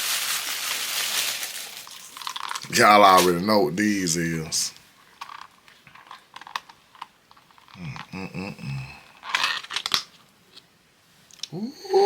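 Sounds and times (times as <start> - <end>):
person humming: 7.8 - 9.0, 11.4 - 12.0.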